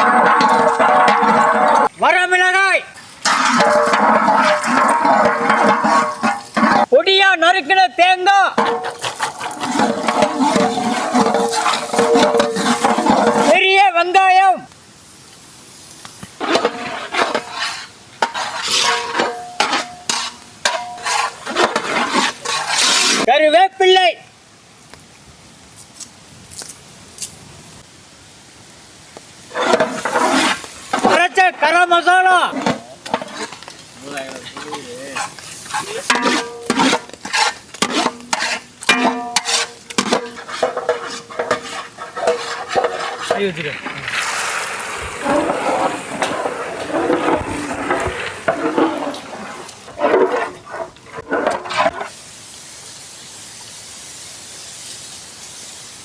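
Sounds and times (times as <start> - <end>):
metal ladle scraping pan: 0.0 - 2.0, 3.0 - 6.9, 8.5 - 13.6, 16.4 - 23.3, 29.5 - 31.8, 32.5 - 52.1
onion sizzling in oil: 2.9 - 6.9, 8.6 - 14.1, 14.7 - 23.3, 24.8 - 56.0.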